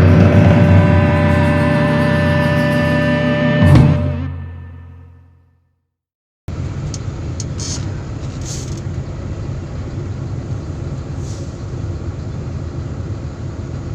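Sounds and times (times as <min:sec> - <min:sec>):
diesel engine rumbling: 0:00.0 - 0:04.9
music: 0:00.0 - 0:05.4.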